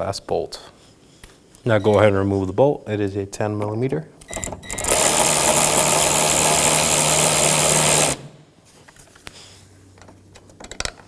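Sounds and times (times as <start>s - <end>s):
power tool spinning out bolt: 4.6s - 8.5s.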